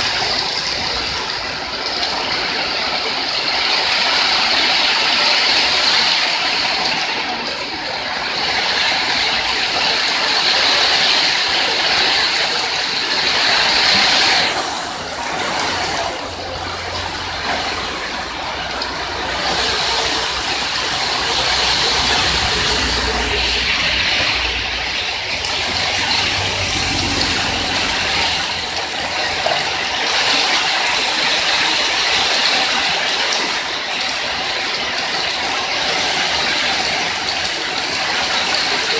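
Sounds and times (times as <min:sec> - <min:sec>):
heavy rain pouring: 0:00.0 - 0:38.9
low rumble: 0:20.8 - 0:29.4.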